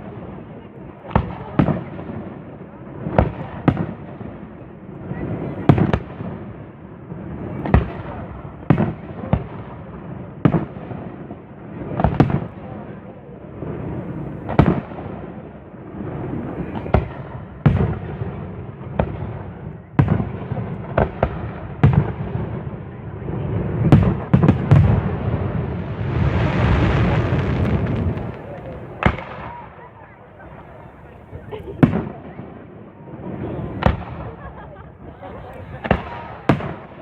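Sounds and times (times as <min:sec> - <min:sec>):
fireworks bursting with sharp bangs: 0:00.0 - 0:37.0
low rumble of echo: 0:24.8 - 0:29.7.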